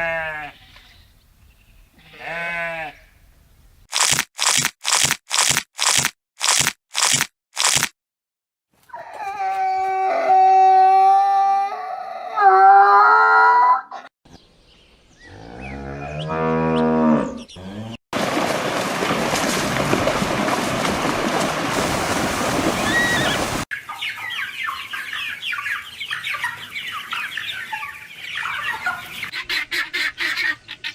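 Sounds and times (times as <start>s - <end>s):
cattle mooing: 15.3s - 18.0s.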